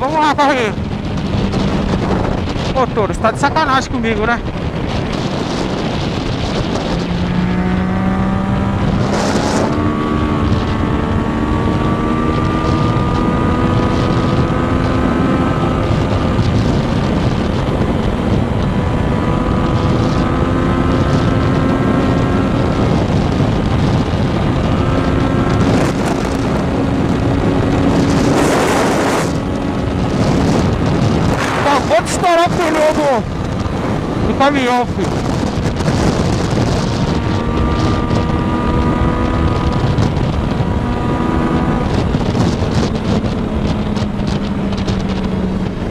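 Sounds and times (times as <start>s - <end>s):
motorcycle engine accelerating: 0.0s - 45.9s
wind rush on microphone: 0.0s - 45.9s
loud rushing sound: 23.4s - 45.9s.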